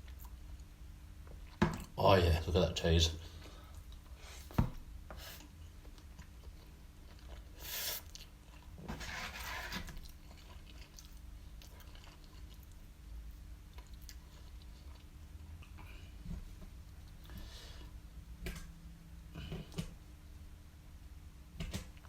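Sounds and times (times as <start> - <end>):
person chewing food: 5.1 - 8.8, 9.9 - 18.0.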